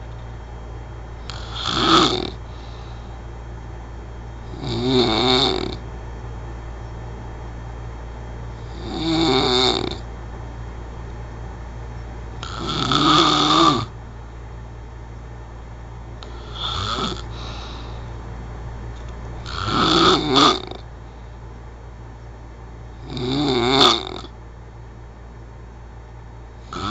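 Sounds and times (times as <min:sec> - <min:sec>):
person snoring heavily: 0:01.2 - 0:03.0, 0:04.4 - 0:05.8, 0:08.6 - 0:10.1, 0:12.4 - 0:13.9, 0:16.2 - 0:18.0, 0:19.4 - 0:20.8, 0:23.0 - 0:24.4, 0:26.6 - 0:26.9.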